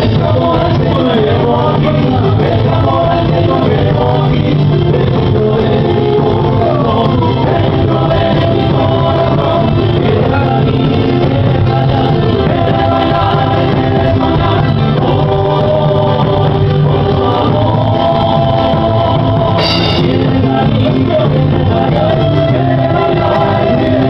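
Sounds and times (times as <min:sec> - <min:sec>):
folk music singing: 0:00.0 - 0:24.0
steady bass line: 0:00.0 - 0:24.0.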